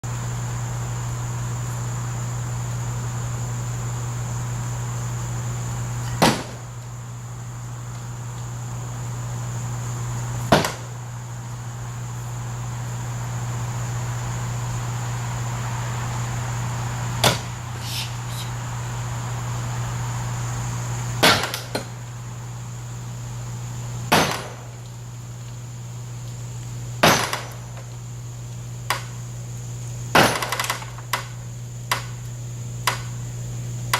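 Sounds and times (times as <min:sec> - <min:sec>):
high-pitched insect drone: 0:00.1 - 0:26.2
axe striking metal swing set: 0:10.5 - 0:10.9, 0:17.2 - 0:18.0, 0:21.2 - 0:21.9, 0:24.1 - 0:24.6, 0:27.0 - 0:27.6, 0:30.2 - 0:30.9.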